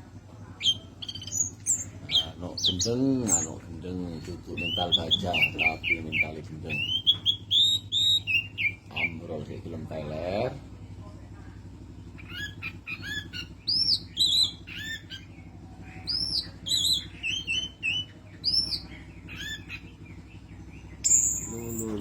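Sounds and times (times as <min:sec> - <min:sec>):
steady low hum: 0:00.0 - 0:22.0
thrush singing high chirps: 0:00.6 - 0:09.5, 0:11.8 - 0:22.0
high bird whistle: 0:20.8 - 0:21.8.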